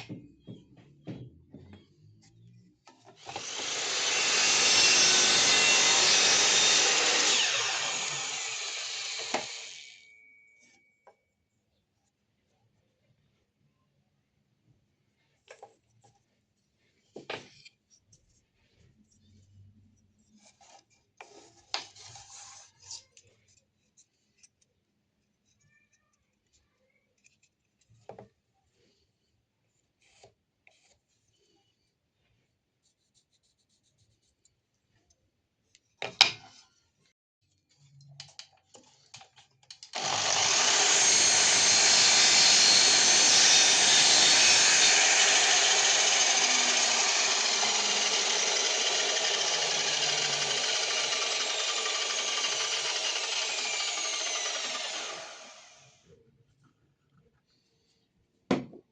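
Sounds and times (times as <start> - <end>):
power tool working wood: 3.2 - 10.1, 39.9 - 56.0.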